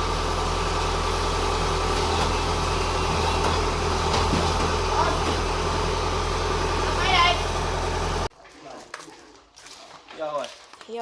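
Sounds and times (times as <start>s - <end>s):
engine idling: 0.0s - 8.3s.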